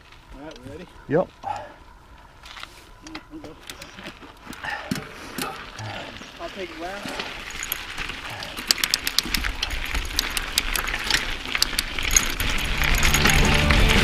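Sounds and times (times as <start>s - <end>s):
tyres rumbling: 0.0s - 14.0s
wind: 0.0s - 14.0s
bike parts clinking and jangling: 2.4s - 14.0s.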